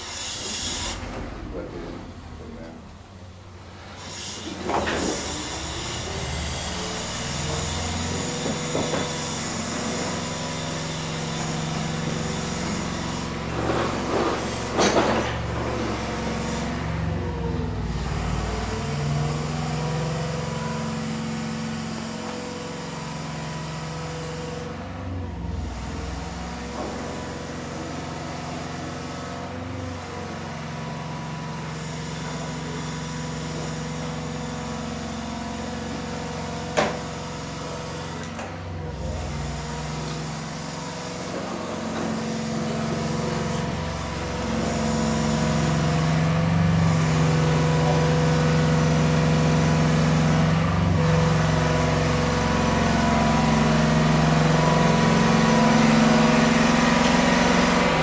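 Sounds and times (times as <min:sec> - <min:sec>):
pile driving rig engine running: 0:00.0 - 0:20.5, 0:38.0 - 0:58.0.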